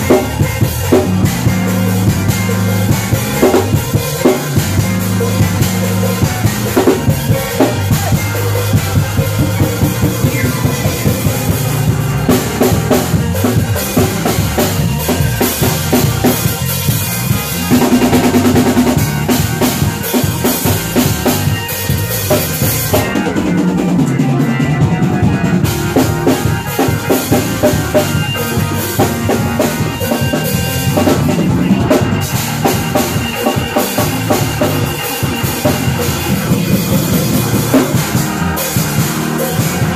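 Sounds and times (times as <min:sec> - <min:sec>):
drum kit fills: 0:00.0 - 0:39.9
live gospel band playing: 0:00.0 - 0:39.9.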